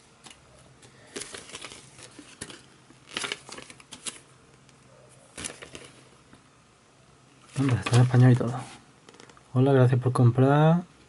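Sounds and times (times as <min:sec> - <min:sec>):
paper booklet rustling: 0:00.2 - 0:06.2, 0:07.5 - 0:09.4.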